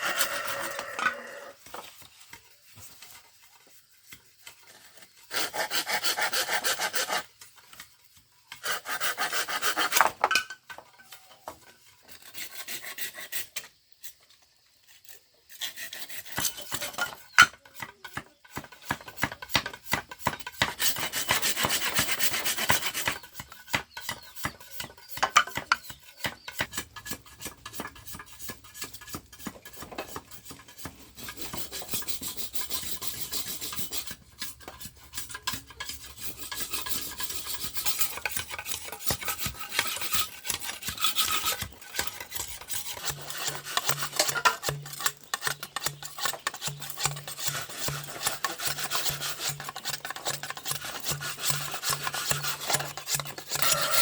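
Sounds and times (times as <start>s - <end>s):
sawing or rasping bamboo: 0.0s - 10.2s, 11.8s - 14.2s, 14.8s - 54.0s
short scraping clicks: 31.3s - 54.0s.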